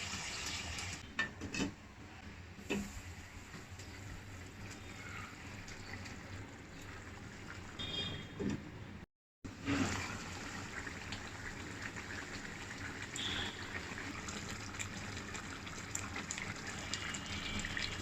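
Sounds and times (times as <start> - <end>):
curry bubbling in a pan: 9.5 - 18.0.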